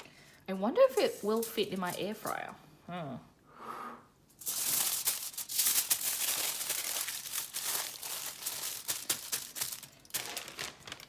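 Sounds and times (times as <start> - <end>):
aluminium foil crinkling: 0.7 - 2.6, 4.4 - 11.0.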